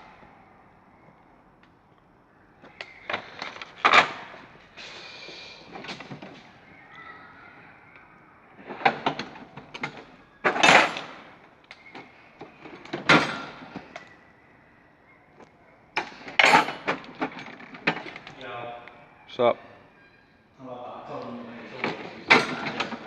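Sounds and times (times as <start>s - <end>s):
metal drawers sliding and knocking: 8.7s - 11.2s, 12.7s - 13.8s, 16.3s - 18.2s, 21.8s - 23.0s
tools rattling: 16.0s - 18.4s, 21.8s - 23.0s.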